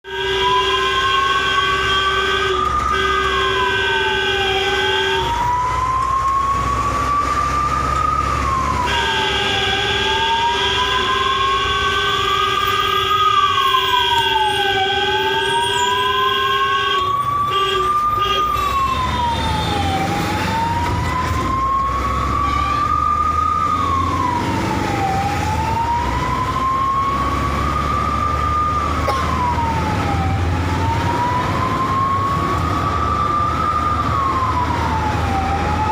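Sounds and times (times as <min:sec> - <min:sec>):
ambulance siren wailing: 0:00.0 - 0:35.9
low vehicle rumble: 0:17.1 - 0:35.9.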